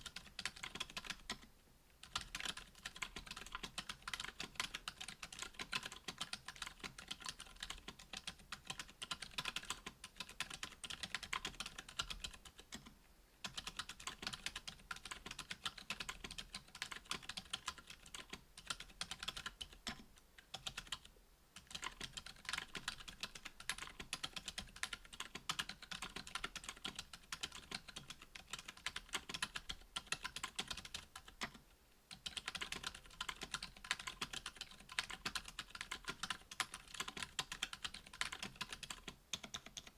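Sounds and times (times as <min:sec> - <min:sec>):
muted mechanical keyboard typing: 0:00.0 - 0:39.9.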